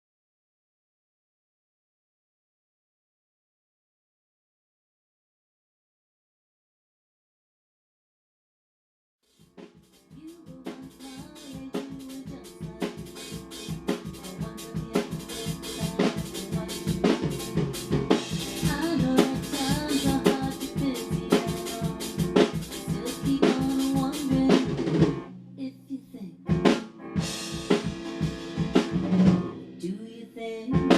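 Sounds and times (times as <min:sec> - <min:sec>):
rock drum kit groove: 0:09.3 - 0:25.4, 0:26.5 - 0:29.8
sustained guitar notes: 0:12.5 - 0:30.9.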